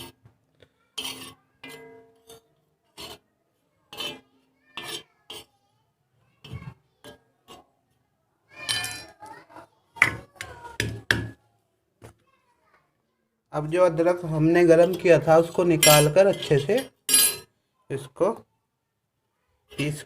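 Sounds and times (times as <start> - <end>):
metal utensil clinking on griddle: 1.0 - 3.2, 3.9 - 5.5, 14.7 - 17.5.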